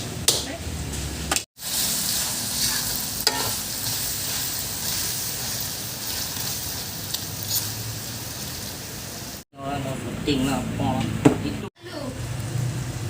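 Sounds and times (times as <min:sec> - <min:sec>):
food sizzling in a pot: 0:01.6 - 0:09.5.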